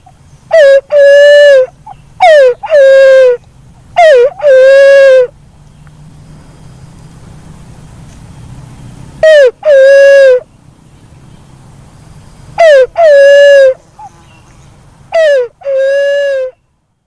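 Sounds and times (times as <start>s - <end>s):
dove hooting calls: 0.0s - 5.4s, 9.2s - 10.5s, 12.5s - 16.6s.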